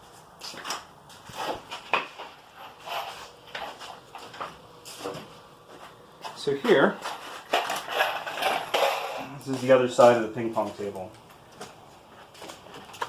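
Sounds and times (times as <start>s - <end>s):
wooden pieces knocking and scraping: 7.0s - 9.3s.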